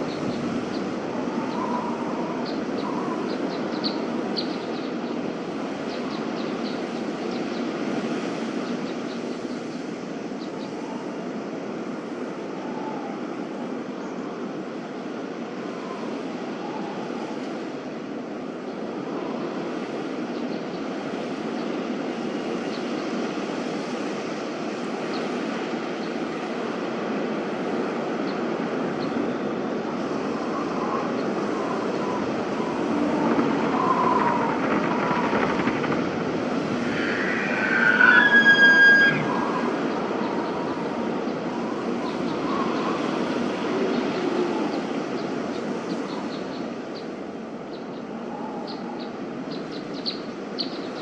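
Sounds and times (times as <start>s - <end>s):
steady rushing noise: 23.4s - 45.8s
high-pitched squeal: 31.9s - 41.1s.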